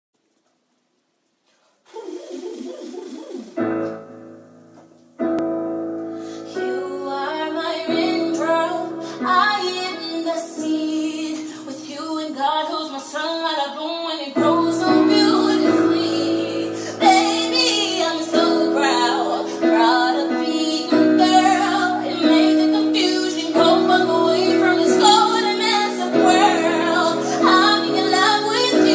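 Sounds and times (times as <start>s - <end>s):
woman singing with vibrato: 6.6s - 28.9s.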